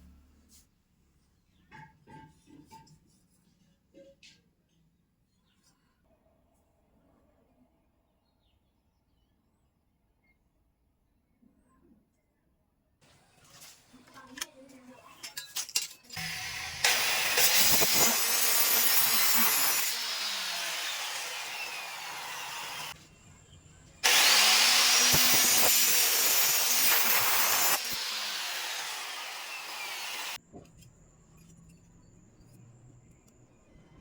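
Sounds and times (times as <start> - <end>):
electric drill running under load: 16.2 - 23.0, 24.0 - 30.4.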